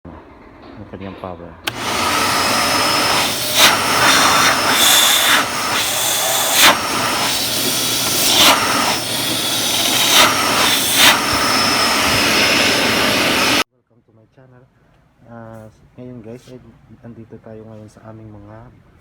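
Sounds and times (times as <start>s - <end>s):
vacuum cleaner running: 1.7s - 13.6s.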